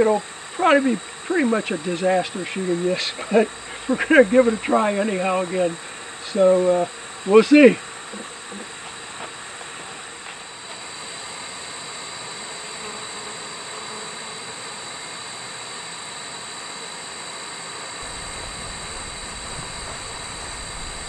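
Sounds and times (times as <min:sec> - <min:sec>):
insect chorus buzzing: 0:00.0 - 0:21.0
low rumble: 0:03.2 - 0:05.9, 0:18.0 - 0:21.0.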